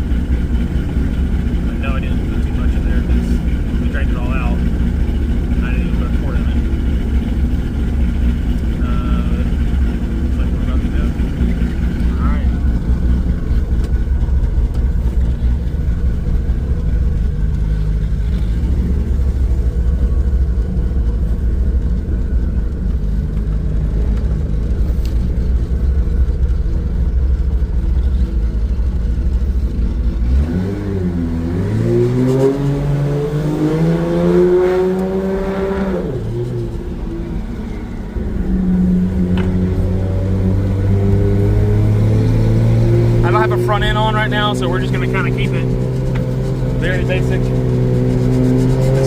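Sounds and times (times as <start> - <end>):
car engine rumbling and revving: 0.0 - 49.0.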